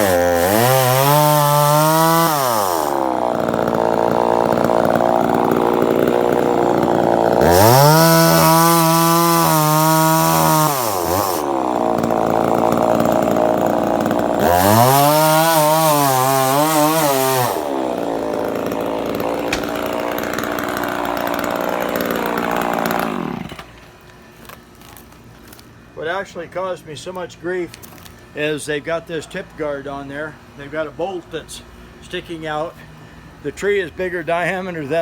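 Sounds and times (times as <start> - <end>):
chainsaw cutting stump: 0.0 - 25.7.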